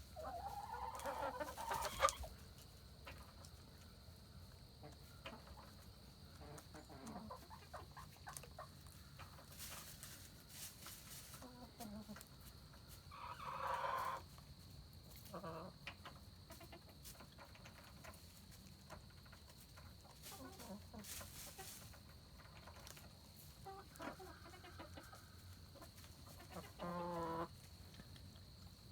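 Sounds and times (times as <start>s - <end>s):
chickens clucking: 0.0s - 28.9s
chicken call: 0.2s - 2.3s.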